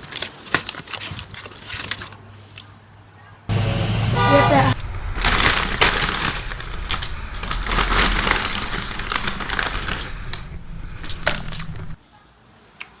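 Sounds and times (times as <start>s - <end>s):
crunching and crackling: 0.0s - 2.2s, 4.8s - 12.0s.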